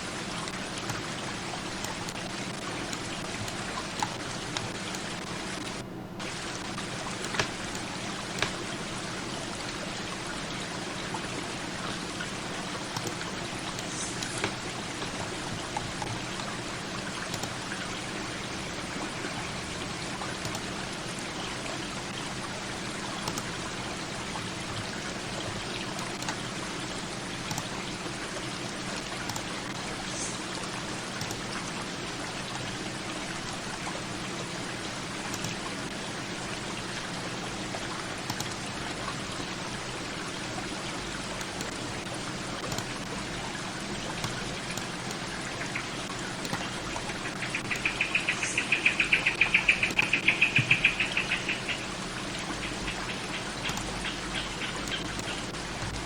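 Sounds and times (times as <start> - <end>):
rushing water: 0.0 - 56.0
sharp ticks: 44.2 - 55.5.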